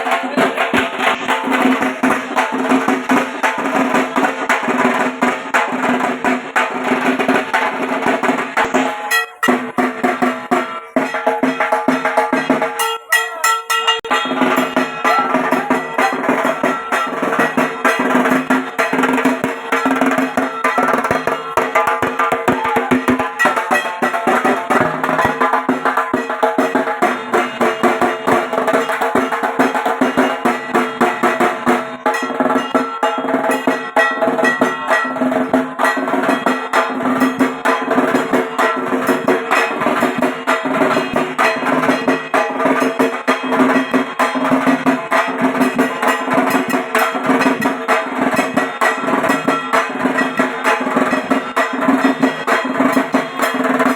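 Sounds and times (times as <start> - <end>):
barrel drum beaten with sticks: 0.0 - 53.9.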